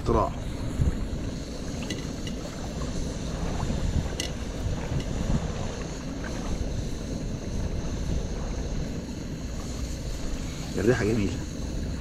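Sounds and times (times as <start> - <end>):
wind rumbling on microphone: 0.0 - 12.0.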